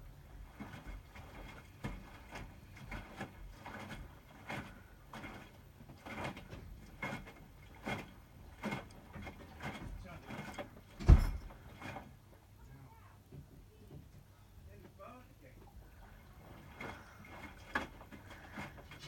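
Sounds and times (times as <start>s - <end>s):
washing machine tumbling: 0.0s - 19.0s
laundry thudding in drum: 8.6s - 12.0s.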